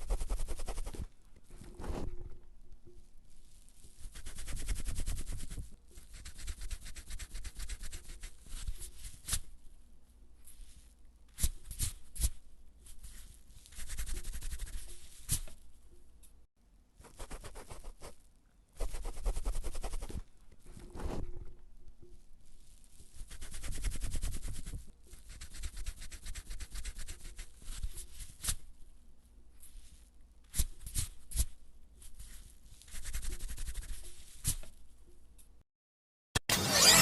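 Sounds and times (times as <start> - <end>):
eraser rubbing on paper: 0.0 - 2.1, 4.0 - 9.4, 13.0 - 15.5, 17.0 - 18.2, 18.8 - 20.2, 23.2 - 28.6, 32.1 - 34.7.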